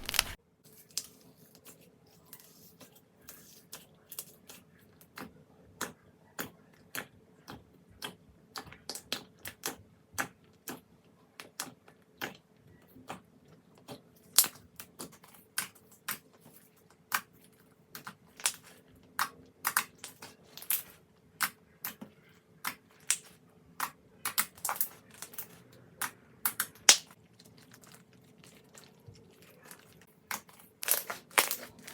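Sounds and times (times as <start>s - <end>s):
slime clicking and popping: 22.6s - 27.1s, 30.3s - 31.9s.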